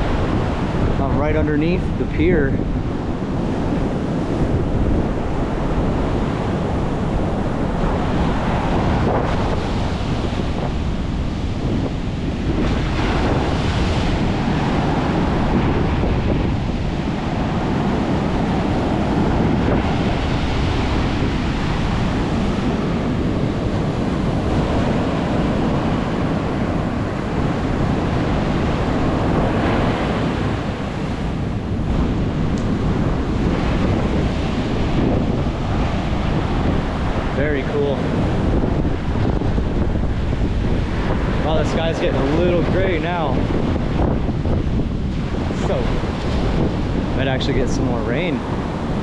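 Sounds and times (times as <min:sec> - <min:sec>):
surf crashing: 0:00.0 - 0:49.0
wind buffeting microphone: 0:00.0 - 0:49.0.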